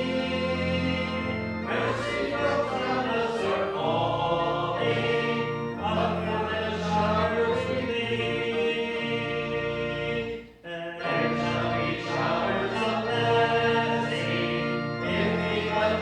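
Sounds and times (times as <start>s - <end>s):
congregation singing a hymn: 0.0s - 16.0s
held accompaniment chords: 0.0s - 16.0s.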